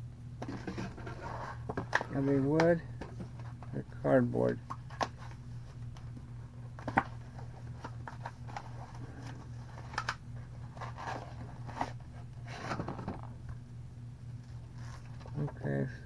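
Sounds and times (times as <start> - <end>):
packaging scrapes and rustles: 10.7 - 13.0, 14.7 - 15.4.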